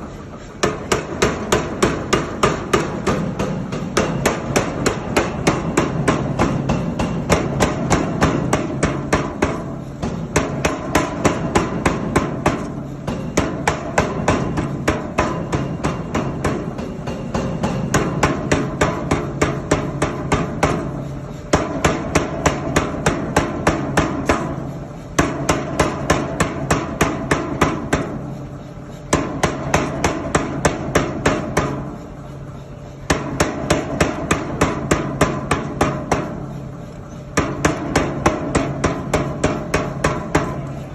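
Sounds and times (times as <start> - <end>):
power hammer pounding: 0.6 - 32.0, 33.0 - 36.6, 37.3 - 40.9.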